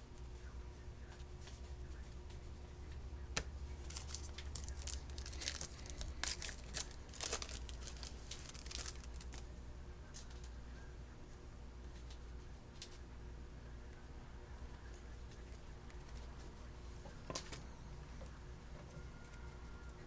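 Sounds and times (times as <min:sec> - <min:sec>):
foil wrapper tearing and crinkling: 0:03.8 - 0:09.5.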